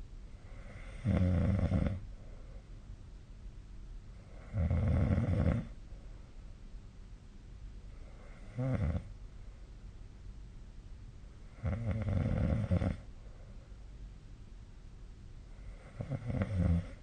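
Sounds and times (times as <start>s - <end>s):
person snoring: 0.6s - 2.0s, 8.2s - 9.1s, 11.6s - 13.0s, 15.7s - 17.0s.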